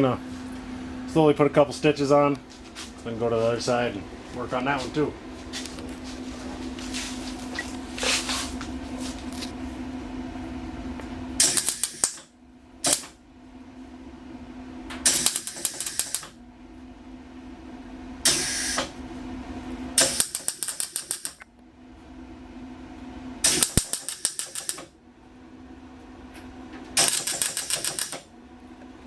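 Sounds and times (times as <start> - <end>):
steady welder hum: 0.0 - 29.0
arc welder crackling: 11.4 - 13.2, 15.0 - 16.4, 20.0 - 21.5, 23.4 - 24.9, 27.0 - 28.3.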